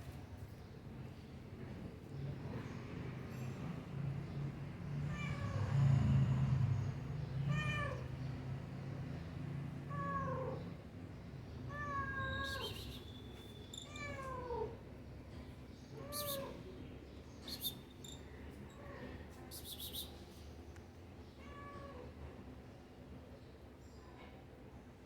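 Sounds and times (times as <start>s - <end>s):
cat meowing: 11.7s - 12.8s, 13.8s - 14.8s, 16.0s - 16.6s.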